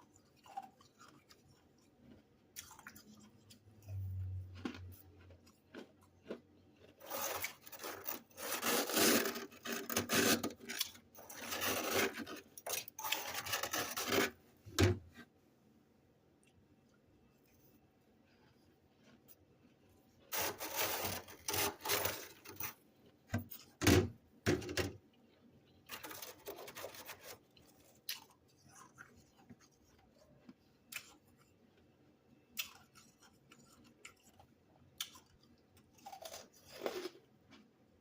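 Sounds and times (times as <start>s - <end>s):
freezer frost being scraped: 6.8s - 15.0s, 20.3s - 22.8s, 25.9s - 27.9s, 36.3s - 37.2s.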